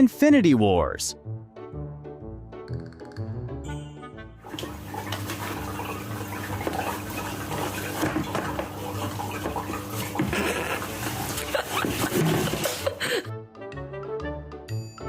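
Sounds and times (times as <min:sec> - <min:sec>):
water running: 0:04.4 - 0:13.3.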